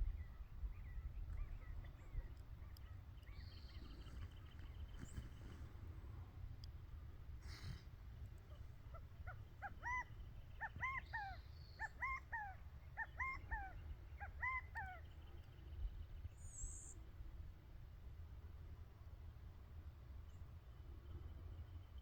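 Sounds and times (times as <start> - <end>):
bird calling in short phrases: 8.5 - 15.1.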